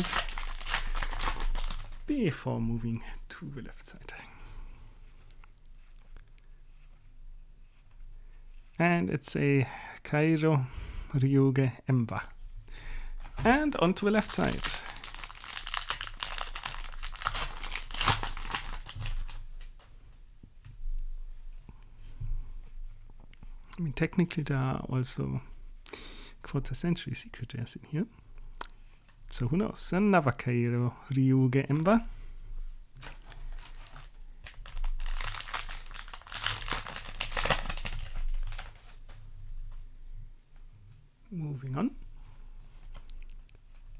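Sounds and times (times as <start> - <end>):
foil wrapper crinkling and tearing: 0.0 - 2.2, 13.2 - 19.9, 33.0 - 39.2.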